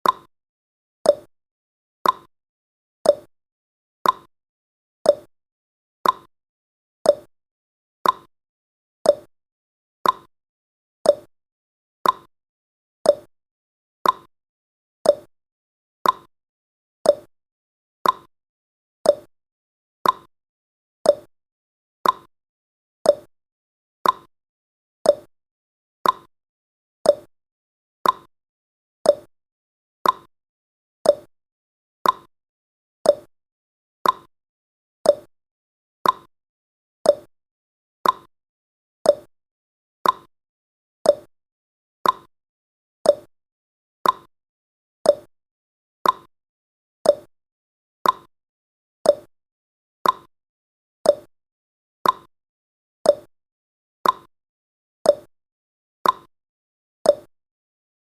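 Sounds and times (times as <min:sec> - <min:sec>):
clock ticking: 0:18.0 - 0:18.3, 0:34.0 - 0:34.3, 0:38.0 - 0:38.3, 0:42.0 - 0:42.3, 0:50.0 - 0:50.3.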